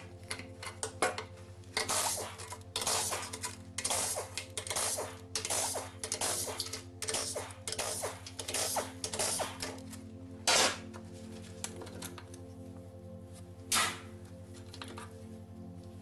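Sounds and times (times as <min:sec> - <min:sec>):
metallic clicks of tools: 0:00.2 - 0:09.8.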